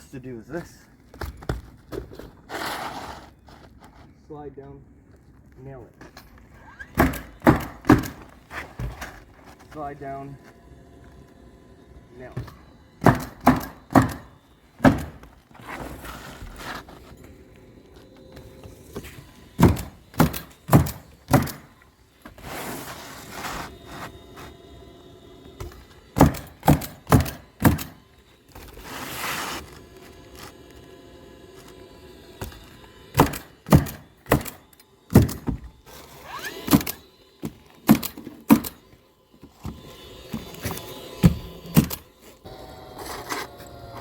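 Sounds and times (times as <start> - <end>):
shingles scraping: 1.1 - 4.1, 6.0 - 10.7, 12.5 - 24.7, 25.6 - 34.4
nails hammered into shingles: 7.0 - 8.3, 12.4 - 15.3, 19.6 - 21.7, 25.6 - 28.0, 33.1 - 35.6.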